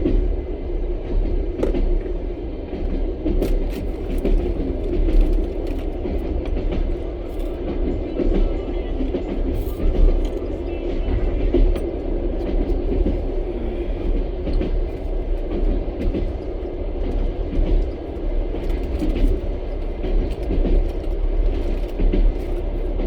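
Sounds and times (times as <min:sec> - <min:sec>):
train rumbling inside carriage: 0:00.0 - 0:23.0.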